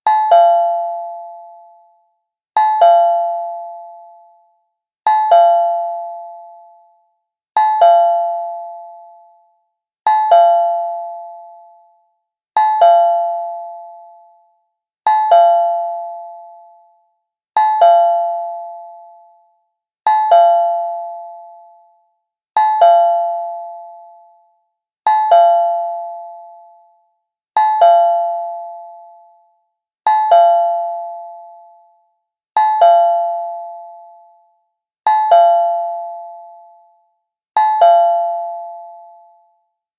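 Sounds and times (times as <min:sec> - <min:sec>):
cartoon doorbell chime: 0:37.6 - 0:39.1.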